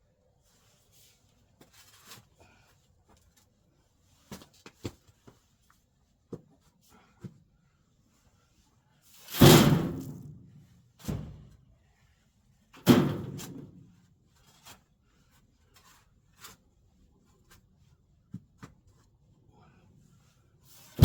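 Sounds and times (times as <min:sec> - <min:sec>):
shovel loads thudding: 0:09.2 - 0:10.3.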